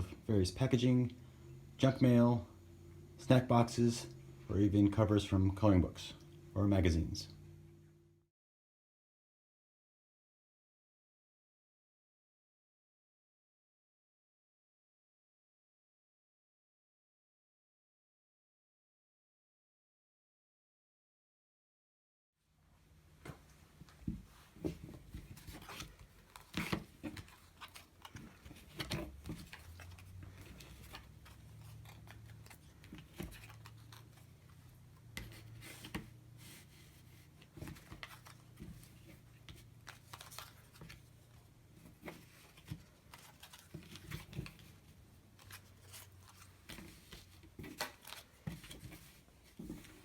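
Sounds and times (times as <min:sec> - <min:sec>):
faint low hum: 0:00.0 - 0:08.3.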